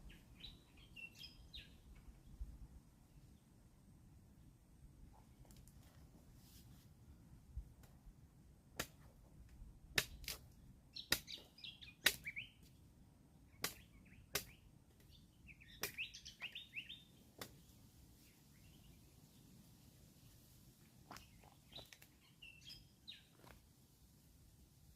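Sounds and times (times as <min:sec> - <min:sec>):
small bird chirping: 0:00.0 - 0:01.9, 0:10.9 - 0:12.6, 0:13.5 - 0:19.1, 0:21.1 - 0:23.5.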